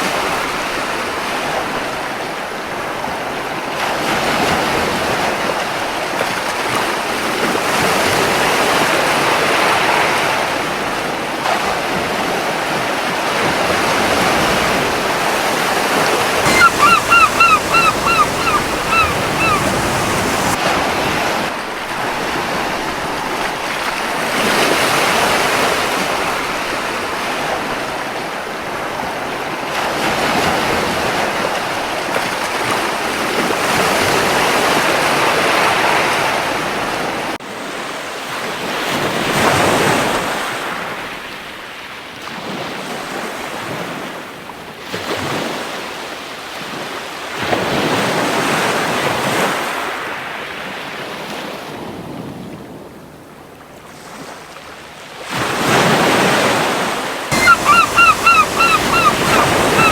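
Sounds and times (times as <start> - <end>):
sea waves washing onto beach: 13.2 - 22.5, 55.3 - 59.9
seagull short calls: 16.4 - 20.6, 57.3 - 59.9.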